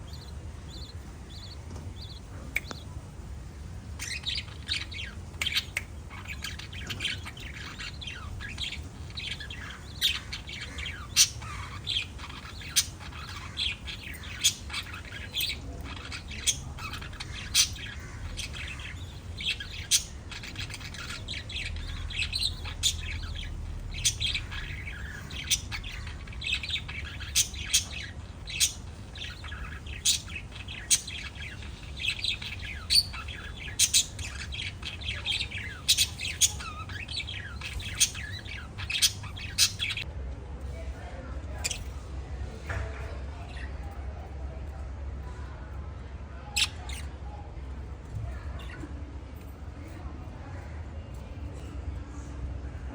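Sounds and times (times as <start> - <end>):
parrots chirping and squawking: 0.0 - 40.1, 41.6 - 42.0, 46.5 - 47.2
steady low hum: 0.0 - 42.6.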